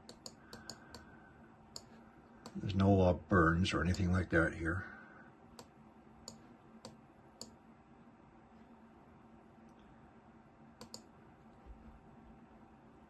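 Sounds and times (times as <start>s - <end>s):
computer mouse clicks: 0.0s - 1.1s, 1.7s - 2.6s, 5.6s - 7.6s, 10.8s - 11.1s.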